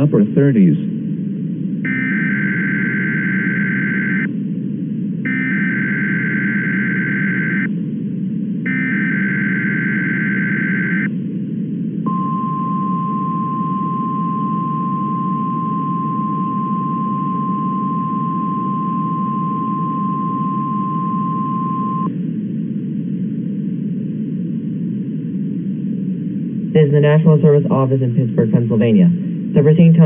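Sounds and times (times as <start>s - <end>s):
warbling data burst: 1.9s - 4.3s, 5.3s - 7.7s, 8.7s - 11.1s
steady alert tone: 5.3s - 7.7s.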